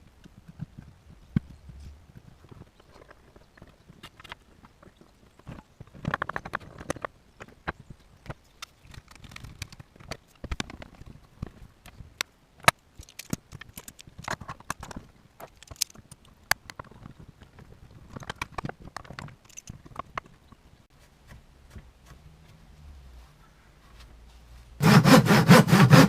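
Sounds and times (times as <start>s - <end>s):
wood pieces knocking together: 12.6s - 17.1s.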